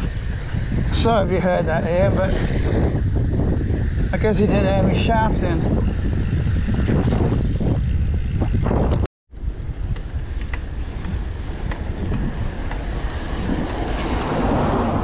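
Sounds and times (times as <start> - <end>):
road noise: 0.0 - 15.0
wind buffeting microphone: 0.0 - 15.0.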